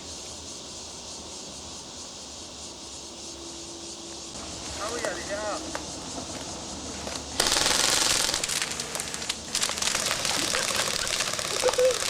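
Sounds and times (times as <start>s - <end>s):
rifles firing full-auto bursts: 7.4s - 12.0s.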